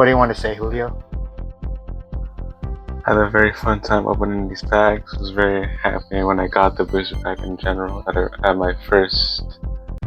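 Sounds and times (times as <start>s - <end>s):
electronic music with quick beat: 6.7s - 8.4s.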